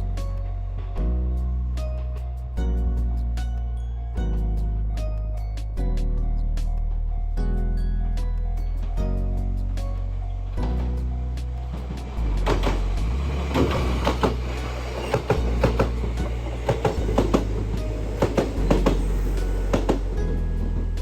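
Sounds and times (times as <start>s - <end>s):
background music: 0.0s - 21.0s
train wheels clacking over rail joints: 10.6s - 21.0s.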